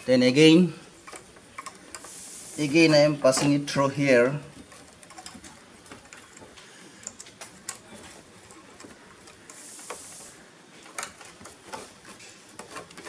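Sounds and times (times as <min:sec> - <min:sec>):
short rasping hiss: 0:02.0 - 0:02.9, 0:09.5 - 0:10.4.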